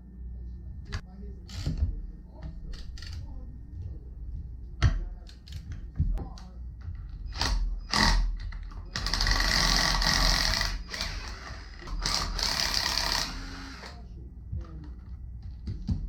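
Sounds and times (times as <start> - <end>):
power tool running: 7.3 - 14.0.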